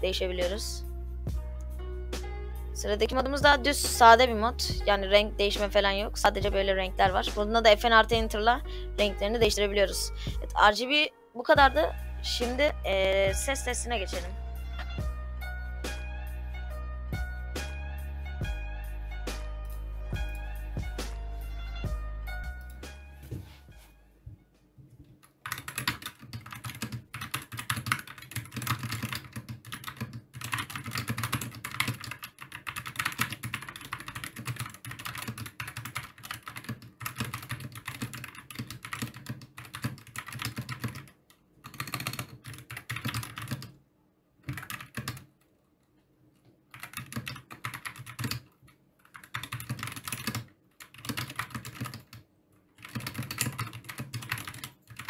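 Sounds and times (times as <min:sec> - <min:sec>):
mechanical keyboard typing: 0:25.2 - 0:43.8, 0:44.4 - 0:45.4, 0:46.7 - 0:52.2, 0:52.8 - 0:55.0.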